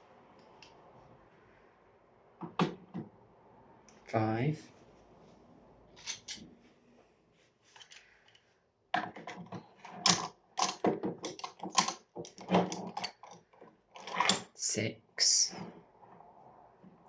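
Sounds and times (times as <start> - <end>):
objects clacking and knocking: 6.0 - 6.6, 7.7 - 14.6.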